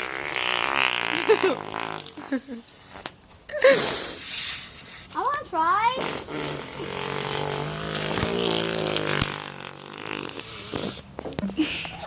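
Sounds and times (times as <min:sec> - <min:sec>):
portable air compressor running: 0:06.0 - 0:11.1.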